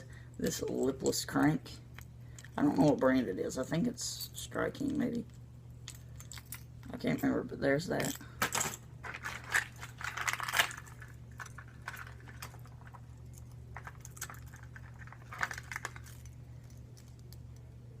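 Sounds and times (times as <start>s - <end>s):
low steady hum: 0.0s - 18.0s
lures clattering in tackle box: 8.4s - 13.0s, 13.8s - 16.4s.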